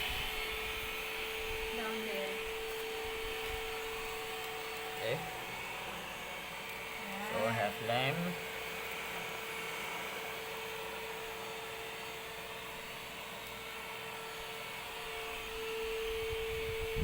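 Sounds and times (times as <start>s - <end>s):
vacuum cleaner motor whine: 0.0s - 17.0s.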